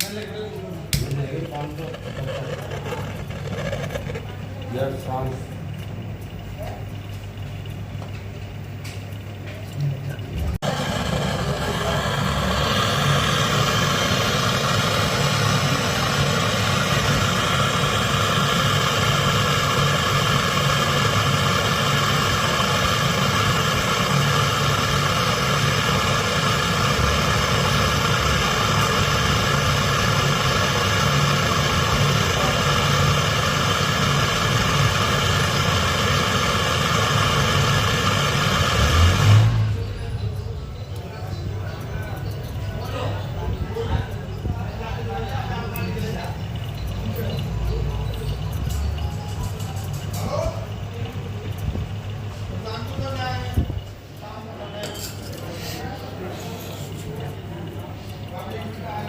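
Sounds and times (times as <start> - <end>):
motor-driven machine running: 0.0 - 54.6.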